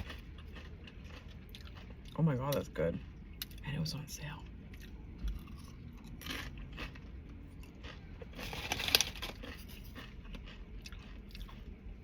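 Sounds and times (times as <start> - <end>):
chips crunching while chewed: 0.0 - 3.6, 4.7 - 12.0.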